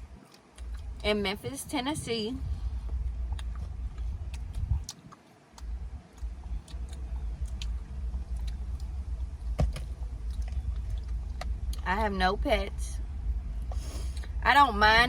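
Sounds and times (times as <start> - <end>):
steady low rumble: 0.0 - 15.0
clicks of eating and handling food: 3.3 - 11.8.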